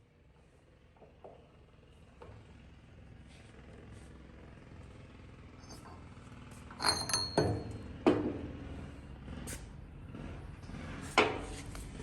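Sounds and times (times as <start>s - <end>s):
metallic clanks and knocks: 6.7s - 8.4s.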